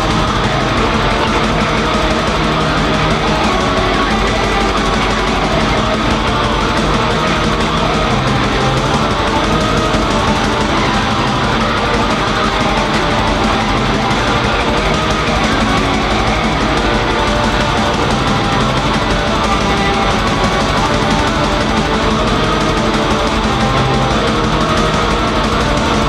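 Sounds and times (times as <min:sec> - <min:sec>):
distorted guitars: 0:00.0 - 0:26.0
fast drumming: 0:00.0 - 0:26.0.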